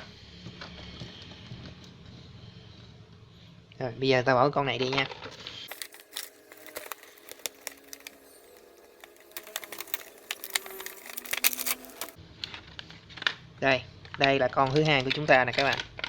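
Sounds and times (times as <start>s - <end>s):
packaging crinkling and clicking: 5.7s - 13.3s, 15.0s - 16.0s.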